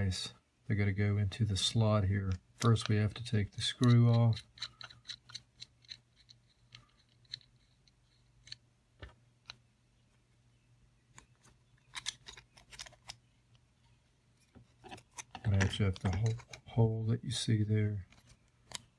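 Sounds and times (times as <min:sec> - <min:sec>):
small parts clicking: 0:03.6 - 0:08.7, 0:11.1 - 0:13.6.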